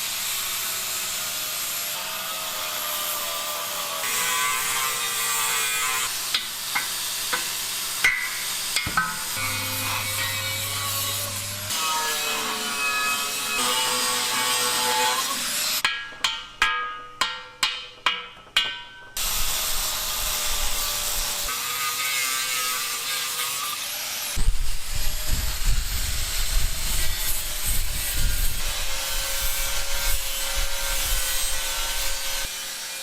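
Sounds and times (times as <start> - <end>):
rough grinding: 4.0 - 17.3
rough rasping: 4.1 - 18.2
sharp ringing metal strikes: 15.8 - 19.2.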